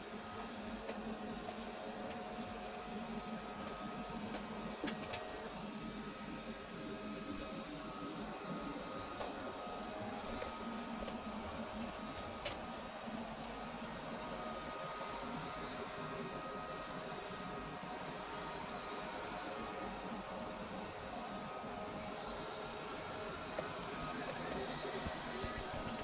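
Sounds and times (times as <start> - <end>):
robot vacuum humming and whining: 0.0 - 26.0.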